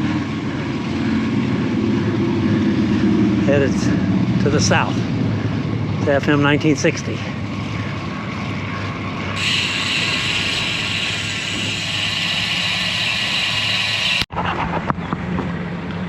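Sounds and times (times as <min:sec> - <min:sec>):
bicycle wind and road noise: 0:00.0 - 0:16.0
hissing rush: 0:09.4 - 0:14.3.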